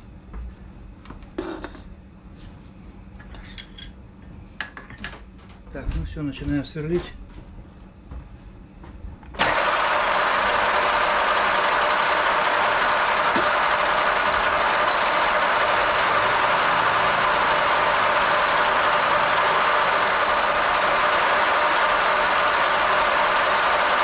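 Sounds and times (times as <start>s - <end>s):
machine tool motor whirring: 9.4s - 24.0s.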